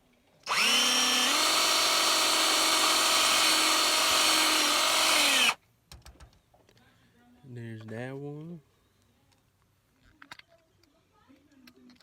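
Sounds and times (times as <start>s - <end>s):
electric drill whining: 0.5s - 5.6s.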